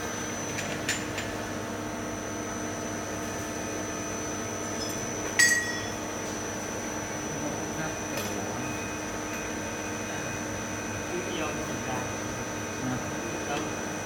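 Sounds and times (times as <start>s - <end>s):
machine hum with high whine: 0.0s - 14.0s.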